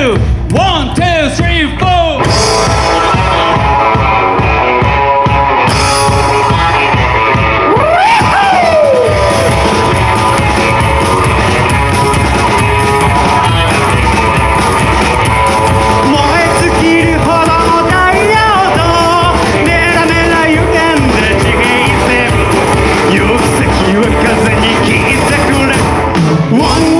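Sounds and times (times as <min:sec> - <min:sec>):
rockabilly band playing: 0:00.0 - 0:26.9
person singing: 0:12.3 - 0:26.9.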